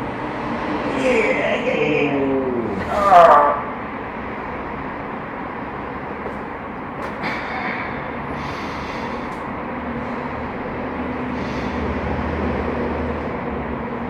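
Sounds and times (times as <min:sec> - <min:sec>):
low hum: 0:00.0 - 0:08.3.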